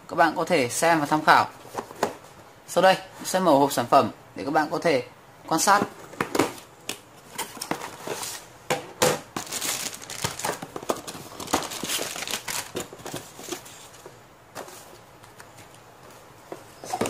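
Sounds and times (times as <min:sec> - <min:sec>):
paper and plastic crinkling: 0:09.3 - 0:15.7.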